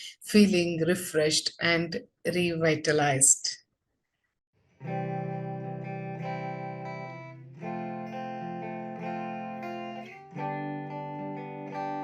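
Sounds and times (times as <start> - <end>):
acoustic guitar strumming chords: 4.8 - 12.0.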